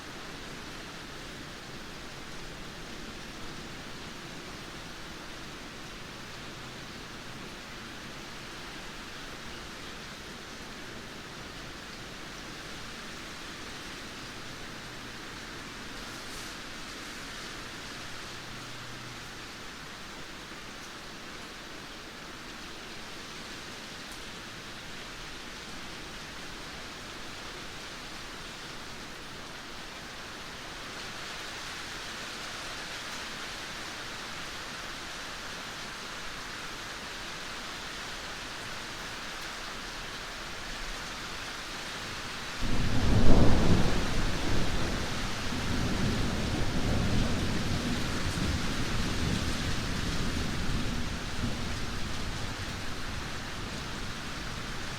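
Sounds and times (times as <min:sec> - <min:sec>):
heavy rain hissing: 0:00.0 - 0:54.9
thunder clap and rumble: 0:42.6 - 0:54.8.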